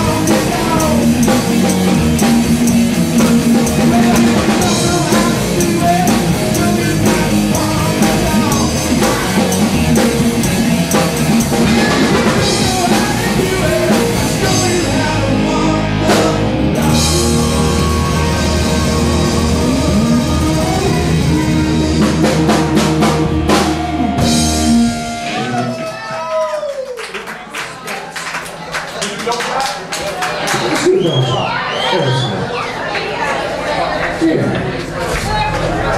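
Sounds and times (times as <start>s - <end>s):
person singing: 0.0s - 25.7s
drum kit: 0.0s - 25.8s
bass guitar: 0.0s - 26.0s, 34.0s - 35.9s
electric guitar: 0.0s - 26.3s.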